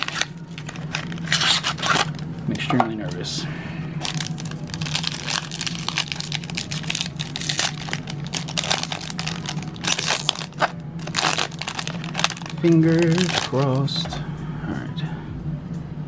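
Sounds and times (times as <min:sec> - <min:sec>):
plastic wrapper crinkling and tearing: 0:00.0 - 0:02.3, 0:04.0 - 0:14.2
steady low hum: 0:00.0 - 0:16.0.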